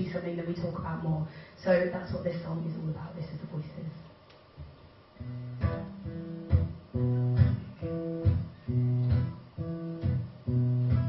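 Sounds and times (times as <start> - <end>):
acoustic guitar strumming chords: 5.2 - 11.0.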